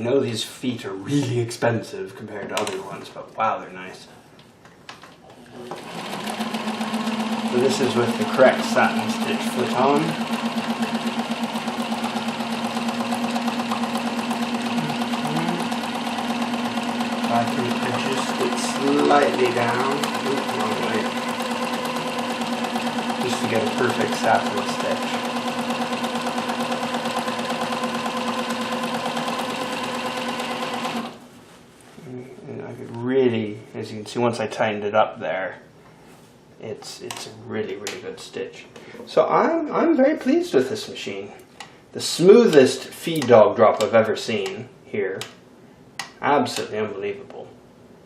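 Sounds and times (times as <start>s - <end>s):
sewing machine running: 5.5s - 31.2s.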